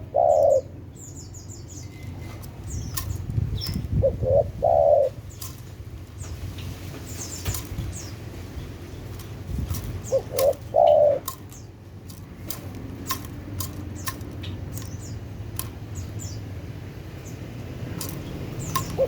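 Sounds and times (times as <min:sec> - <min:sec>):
dove cooing: 0:00.0 - 0:00.8, 0:02.2 - 0:05.6, 0:09.2 - 0:15.7, 0:18.0 - 0:19.0
thin high chirps: 0:17.3 - 0:19.0.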